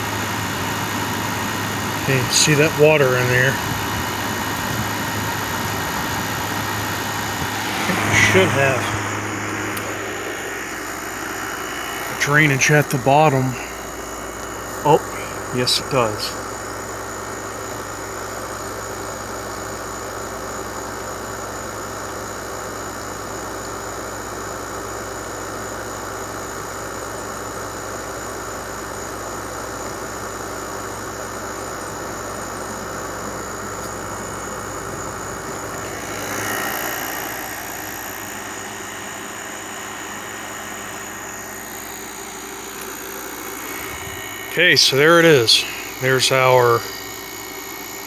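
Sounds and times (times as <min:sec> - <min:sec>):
air conditioner humming: 0:00.0 - 0:17.9, 0:30.9 - 0:48.0.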